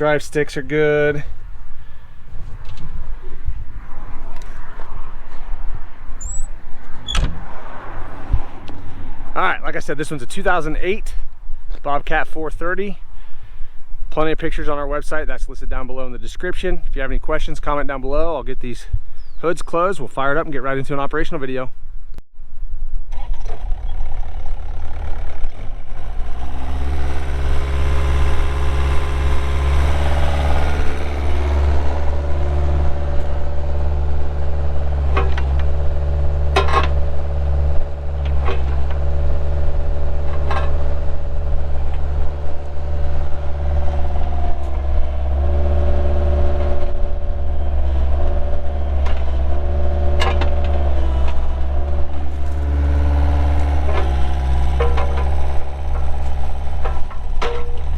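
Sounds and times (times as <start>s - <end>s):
mini excavator diesel engine: 0.0s - 11.0s, 23.1s - 57.9s
sharp metallic knocks: 52.1s - 57.9s.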